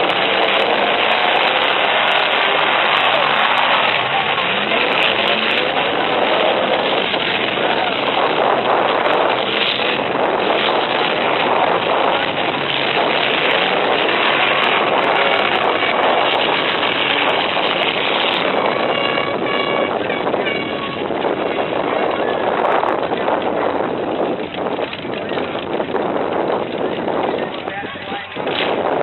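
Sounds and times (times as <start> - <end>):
truck engines running hard: 0.0 - 29.0.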